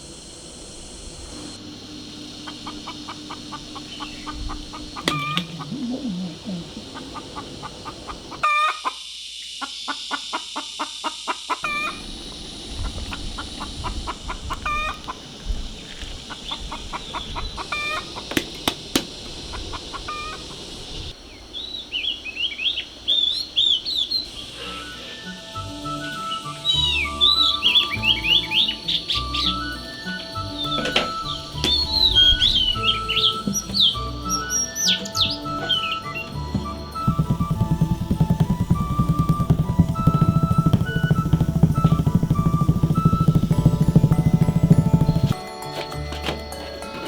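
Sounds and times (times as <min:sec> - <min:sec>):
chickens clucking: 0:02.2 - 0:09.0, 0:09.6 - 0:21.2
small bird chirping: 0:02.3 - 0:08.5, 0:11.6 - 0:45.4.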